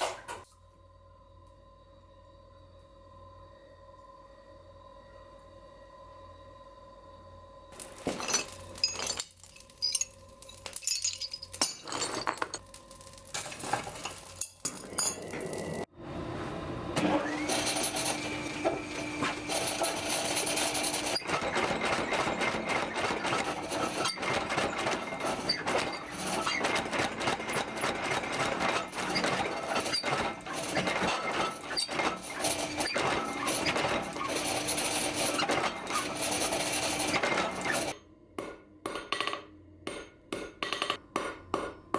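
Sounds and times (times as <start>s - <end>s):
dense clatter: 7.8s - 15.4s
metal pieces clinking: 7.8s - 15.8s.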